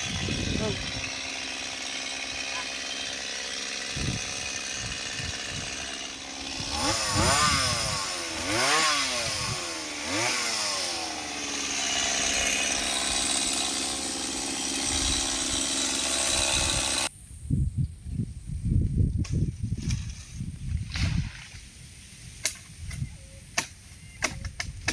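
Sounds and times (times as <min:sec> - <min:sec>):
mini chainsaw running: 0:00.0 - 0:17.1.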